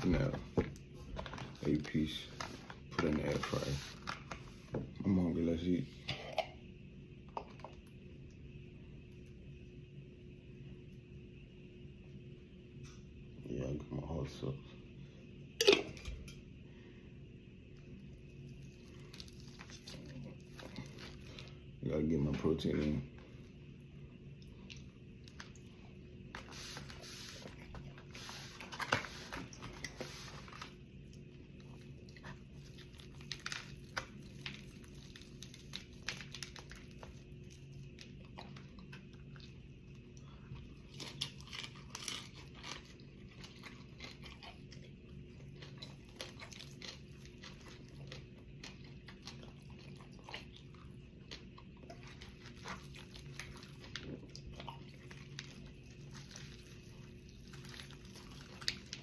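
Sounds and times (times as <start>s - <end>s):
crunchy chewing and biting: 18.2s - 21.7s, 26.4s - 39.5s, 40.5s - 59.0s.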